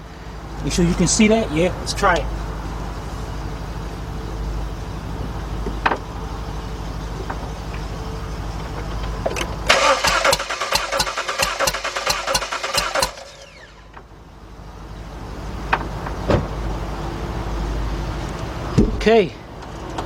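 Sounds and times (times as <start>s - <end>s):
starter cranking an engine: 9.4s - 14.0s.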